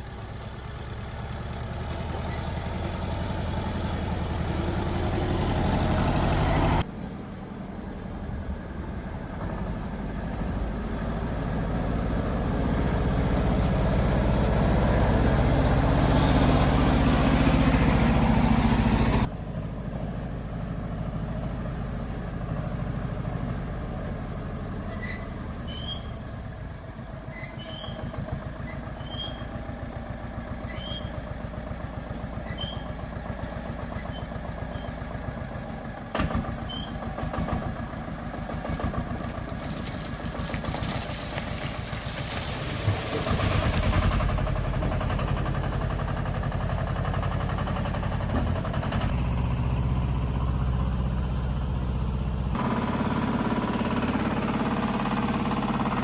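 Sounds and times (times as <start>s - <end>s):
heavy machinery diesel engine: 0.0s - 56.0s.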